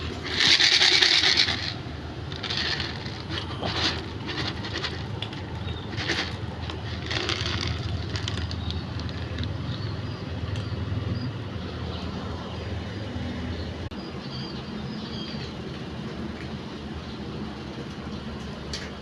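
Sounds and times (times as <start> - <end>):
cat eating and chewing: 0.0 - 11.3
low background rumble: 0.0 - 18.4.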